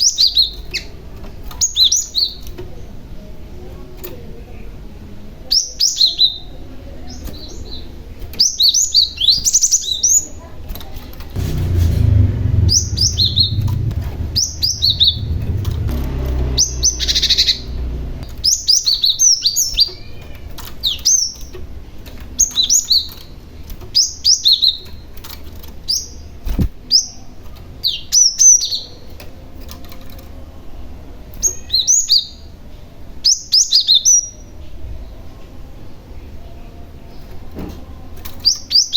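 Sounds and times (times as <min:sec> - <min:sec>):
low rumble: 0:11.4 - 0:18.4
bird chirping: 0:11.4 - 0:21.5.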